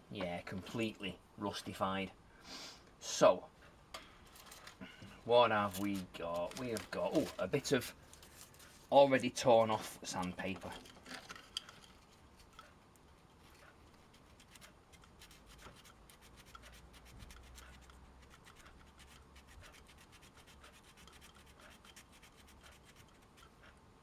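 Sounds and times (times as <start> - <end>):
sandpaper scratching on metal: 14.0 - 23.6.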